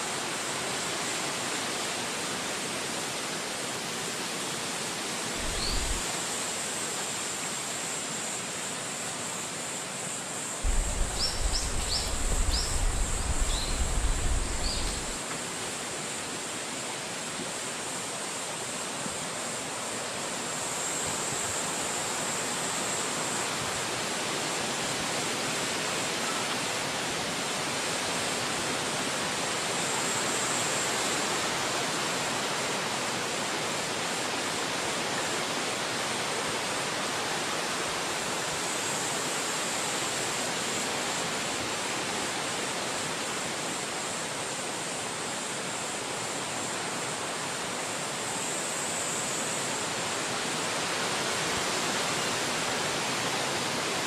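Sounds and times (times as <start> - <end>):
wind blowing through trees: 0.0 - 18.7
wind buffeting microphone: 5.4 - 6.0, 10.6 - 15.2.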